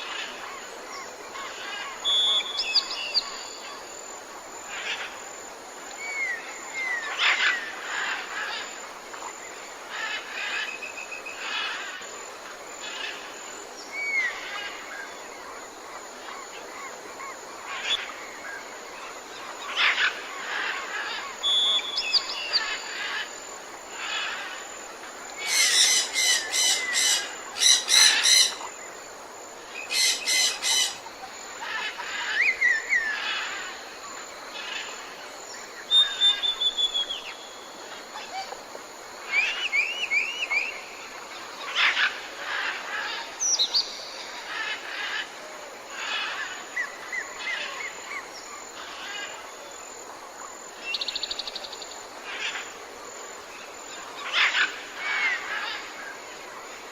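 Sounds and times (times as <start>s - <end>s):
birds calling and singing: 25.3s - 28.9s, 29.7s - 33.8s.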